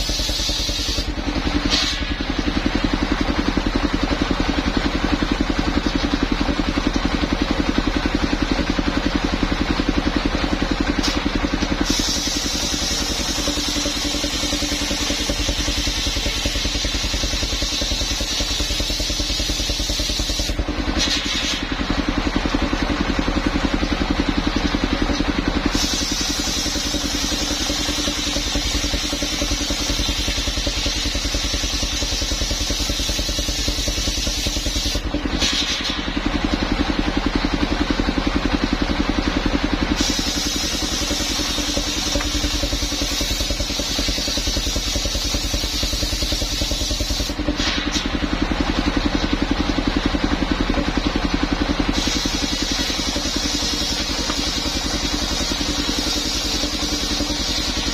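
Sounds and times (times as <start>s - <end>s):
saw engine running: 0.0s - 57.9s
saw blade cutting wood: 51.9s - 57.9s.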